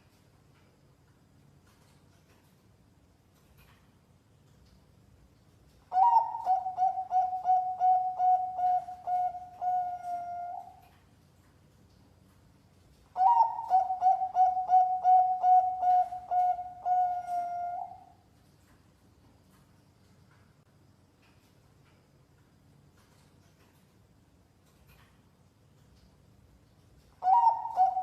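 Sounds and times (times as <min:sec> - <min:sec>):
dove cooing: 0:05.9 - 0:10.9, 0:13.2 - 0:18.1, 0:27.2 - 0:28.0.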